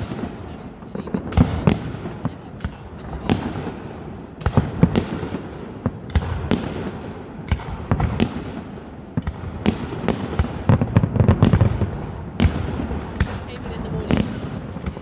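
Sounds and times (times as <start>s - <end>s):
fireworks bangs: 0.0s - 15.0s.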